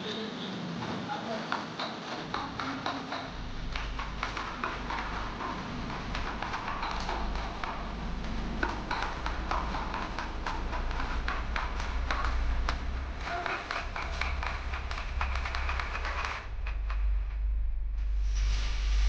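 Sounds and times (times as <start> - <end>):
mallet tapping wood chisel: 1.5 - 16.3.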